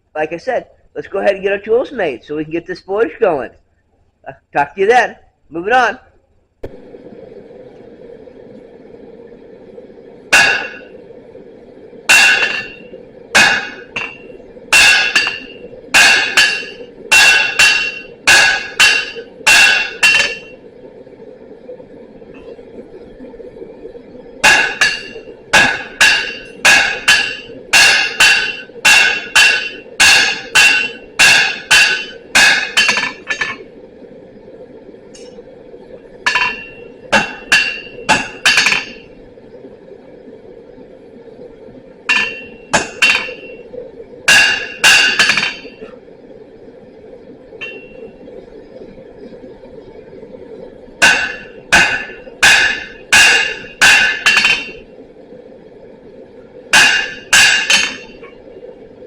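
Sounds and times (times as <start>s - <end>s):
hammer ringing on anvil: 12.1s - 20.5s, 24.4s - 33.6s, 36.3s - 39.0s, 42.1s - 43.6s, 47.6s - 48.0s, 56.8s - 58.2s.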